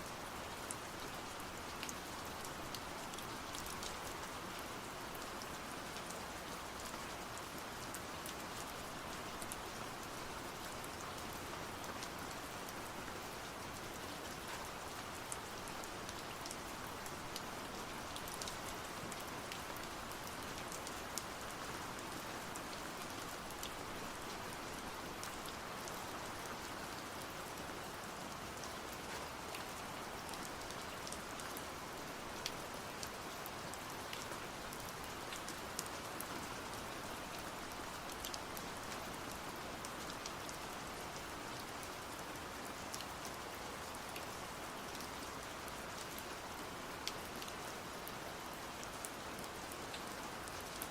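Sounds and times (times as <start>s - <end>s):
raindrops ticking on a surface: 0.1s - 50.9s.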